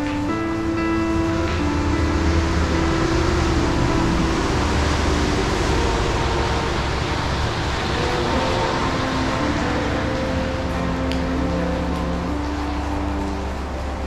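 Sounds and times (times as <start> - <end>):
quiet held music notes: 0.0 - 14.0
storm wind: 0.0 - 14.0.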